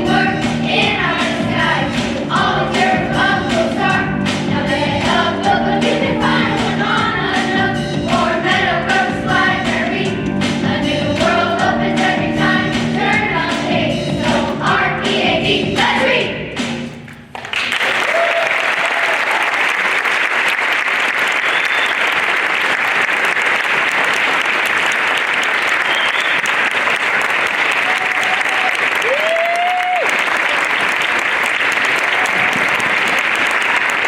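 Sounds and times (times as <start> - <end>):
choir singing: 0.0 - 16.6
audience clapping: 17.2 - 34.0
people cheering: 17.6 - 34.0.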